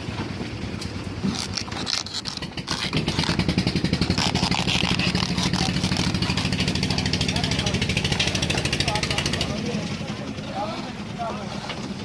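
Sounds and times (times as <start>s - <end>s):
concrete mixer engine chugging: 0.0s - 12.0s
scraping and clattering: 1.2s - 7.1s.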